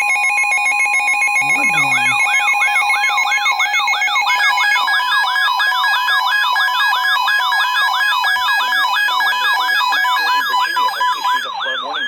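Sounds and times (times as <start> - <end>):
siren-like sweeping alarm: 0.0 - 12.0
two-tone attention signal: 1.4 - 2.8, 9.6 - 12.0.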